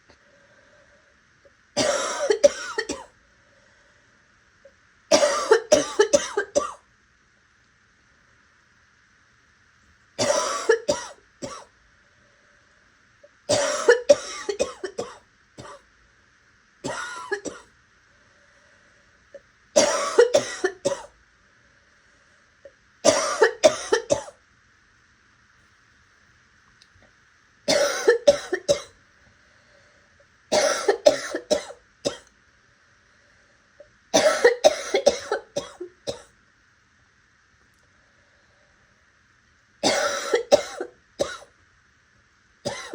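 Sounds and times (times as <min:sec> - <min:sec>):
person breathing: 0:00.1 - 0:01.3, 0:03.3 - 0:04.3, 0:18.1 - 0:19.2, 0:29.4 - 0:30.2, 0:33.0 - 0:33.8, 0:38.0 - 0:39.0
person coughing raspily: 0:01.8 - 0:03.1, 0:05.1 - 0:06.8, 0:10.2 - 0:11.7, 0:13.5 - 0:15.8, 0:16.8 - 0:17.7, 0:19.8 - 0:21.1, 0:23.0 - 0:24.4, 0:27.7 - 0:28.9, 0:30.5 - 0:32.2, 0:34.2 - 0:36.3, 0:39.8 - 0:41.5, 0:42.7 - 0:42.9.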